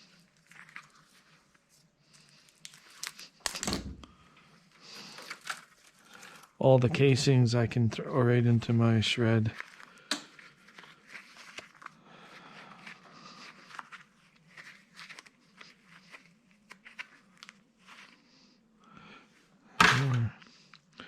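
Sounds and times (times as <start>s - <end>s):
wire and insulation rustling: 0.0s - 6.6s.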